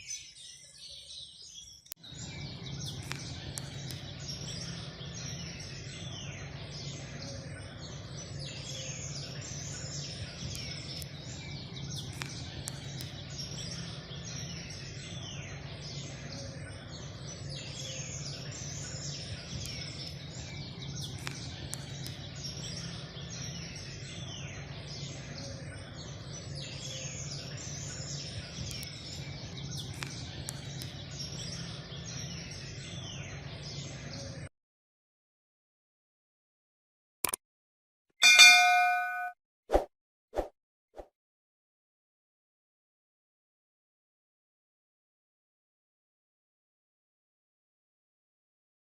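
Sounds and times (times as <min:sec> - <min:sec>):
birds chirping and twittering: 0:00.0 - 0:34.5, 0:38.2 - 0:39.3.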